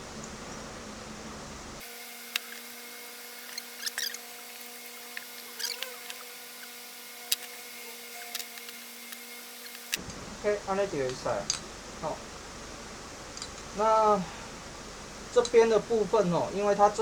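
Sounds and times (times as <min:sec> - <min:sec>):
faint steady hum: 0:00.0 - 0:17.0
small metal parts clicking: 0:03.4 - 0:10.0.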